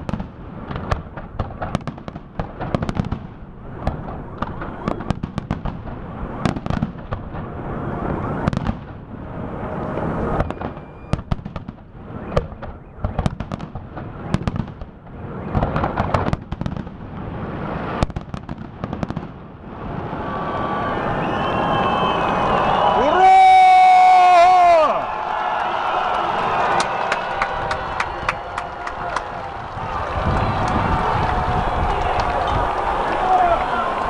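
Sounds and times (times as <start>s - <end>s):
fireworks bangs and crackling: 0.0s - 21.4s.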